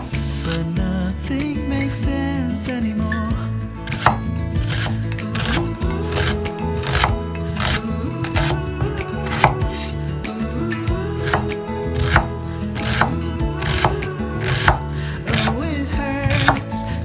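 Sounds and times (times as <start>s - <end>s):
background music: 0.0s - 17.0s
knife chopping food: 3.9s - 8.6s, 11.2s - 16.8s.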